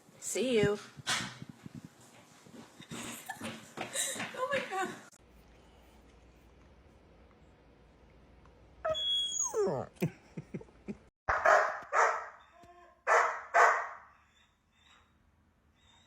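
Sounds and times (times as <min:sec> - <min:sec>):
dog barking: 0:11.3 - 0:12.4, 0:13.1 - 0:14.1.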